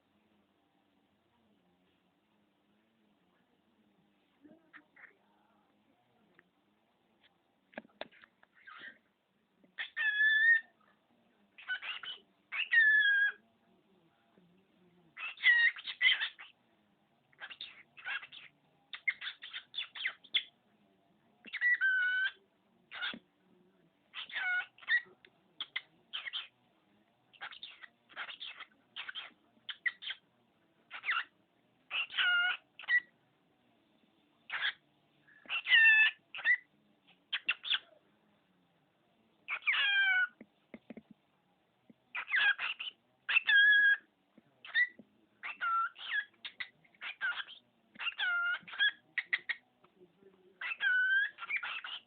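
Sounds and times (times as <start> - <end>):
cockatiel talking: 4.7 - 5.2, 8.0 - 9.0, 9.8 - 10.7, 11.6 - 13.4, 15.1 - 16.6, 17.3 - 20.5, 21.4 - 23.2, 24.1 - 26.6, 27.3 - 30.2, 30.9 - 31.3, 31.9 - 33.1, 34.5 - 36.7, 37.3 - 38.0, 39.4 - 40.4, 42.1 - 49.6, 50.5 - 52.0.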